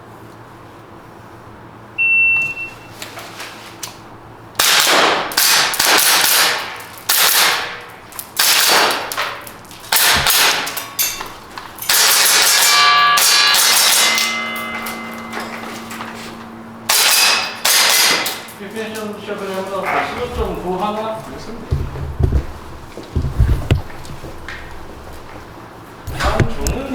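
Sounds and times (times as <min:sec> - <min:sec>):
shot timer beep: 0:02.0 - 0:02.9
airsoft pistol firing: 0:04.6 - 0:07.8, 0:08.4 - 0:09.1, 0:09.9 - 0:10.8, 0:16.9 - 0:18.4
pellets ringing off steel targets: 0:04.6 - 0:18.7.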